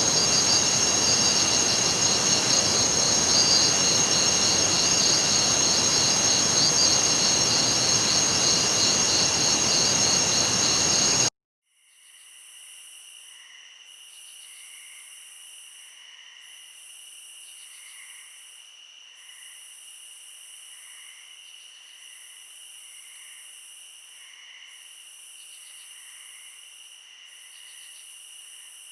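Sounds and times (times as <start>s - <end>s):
crickets chirping: 0.0s - 11.3s
hiss: 0.0s - 11.3s
pulsing high buzz: 0.0s - 11.3s.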